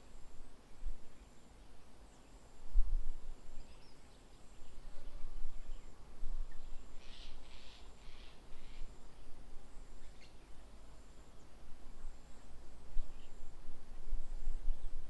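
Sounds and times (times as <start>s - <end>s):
bird calls: 7.0s - 8.9s.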